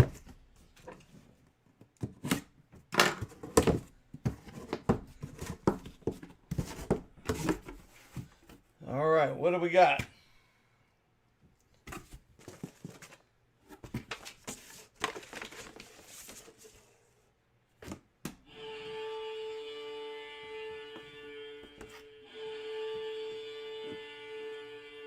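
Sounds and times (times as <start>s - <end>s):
box contents scraping and rustling: 3.2s - 8.6s, 11.9s - 17.1s.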